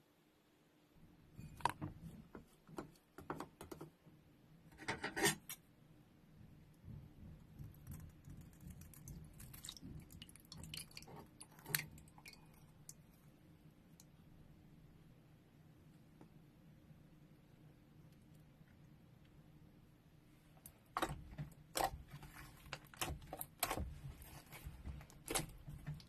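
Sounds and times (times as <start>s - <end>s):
slime squishing with wet crackles: 6.8s - 14.3s, 20.3s - 26.0s.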